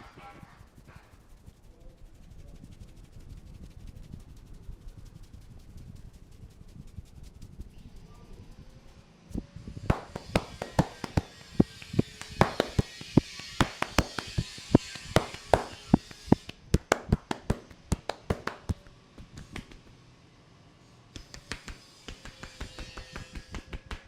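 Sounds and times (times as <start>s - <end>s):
soft rubbing hiss: 0.0s - 9.1s
hands slapping on head: 9.9s - 20.0s, 21.2s - 24.0s.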